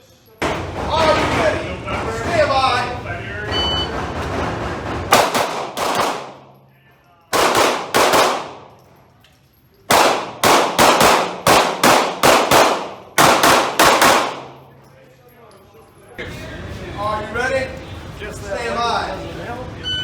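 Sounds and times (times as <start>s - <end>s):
echoing pistol shots: 5.1s - 6.6s, 7.3s - 8.8s, 9.9s - 14.7s.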